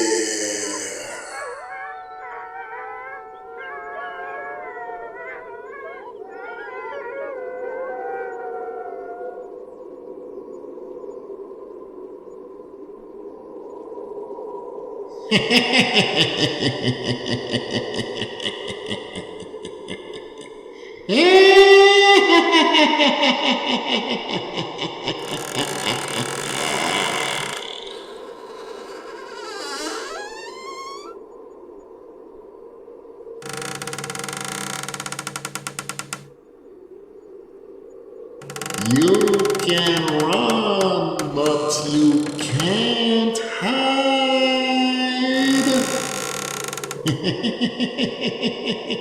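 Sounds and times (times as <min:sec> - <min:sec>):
chorus of howls: 0:00.0 - 0:09.9.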